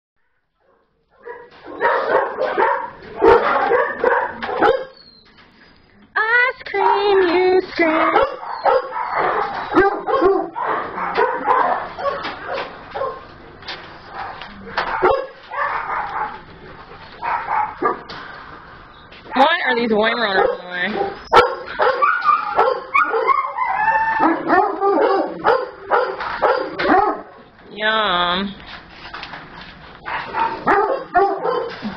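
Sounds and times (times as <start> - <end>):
small dogs barking and yipping: 1.2 - 5.4, 6.7 - 13.3, 14.1 - 16.5, 17.2 - 18.1, 20.2 - 27.4, 30.0 - 31.9
dogs whining: 1.2 - 6.0, 7.8 - 13.3, 20.4 - 27.2.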